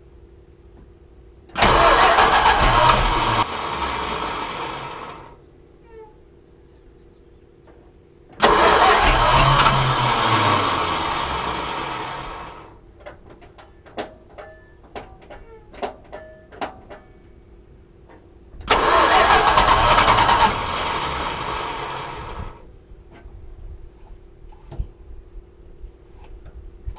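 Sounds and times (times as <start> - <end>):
car engine starting and dying: 1.5 - 5.4, 8.4 - 12.8, 18.6 - 22.7.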